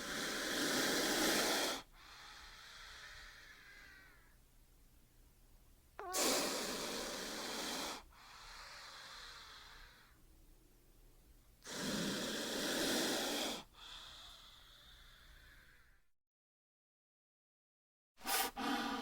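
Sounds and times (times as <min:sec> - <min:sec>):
snake hissing: 0:00.0 - 0:04.1, 0:06.0 - 0:10.1, 0:11.6 - 0:15.6, 0:18.2 - 0:19.0.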